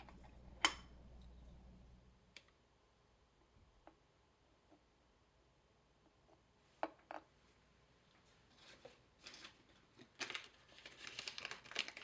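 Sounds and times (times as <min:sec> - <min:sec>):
plastic bag crinkling: 0:09.2 - 0:12.0.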